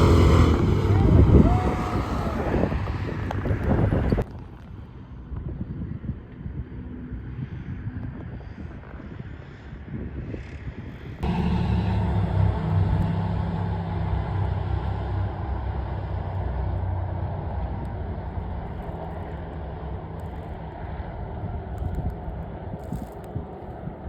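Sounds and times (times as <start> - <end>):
vehicle engine humming: 0.0 - 4.2, 11.2 - 24.0.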